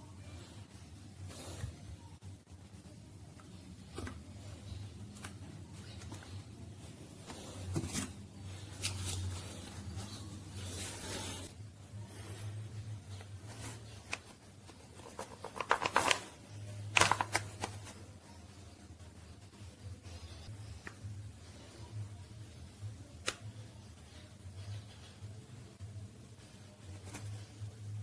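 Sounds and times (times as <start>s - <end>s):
low steady hum: 0.0s - 28.0s
handling rustling and scraping: 3.9s - 16.4s.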